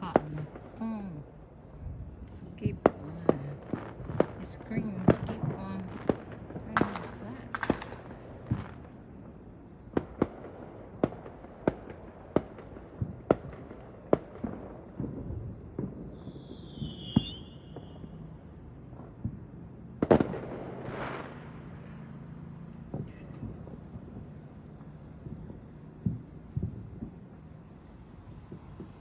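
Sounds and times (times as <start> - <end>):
firework bangs: 0.0 - 29.0
firework whistle: 16.0 - 18.5.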